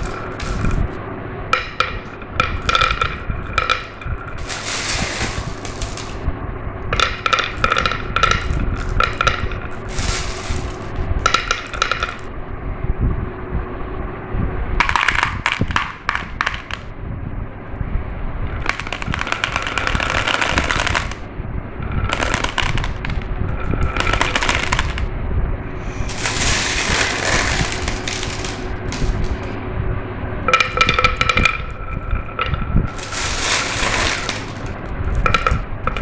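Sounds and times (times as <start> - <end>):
marbles clicking and clattering: 0.0 - 1.0, 1.6 - 6.3, 6.9 - 12.3, 14.8 - 16.9, 18.6 - 25.1, 25.9 - 29.6, 30.5 - 36.0
low rolling rumble: 0.0 - 36.0.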